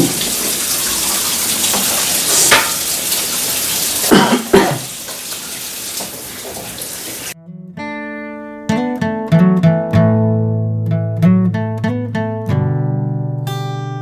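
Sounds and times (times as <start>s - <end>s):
pans and utensils clattering: 0.0s - 7.3s
steady kitchen hiss: 0.0s - 7.4s
acoustic guitar music: 7.3s - 14.0s.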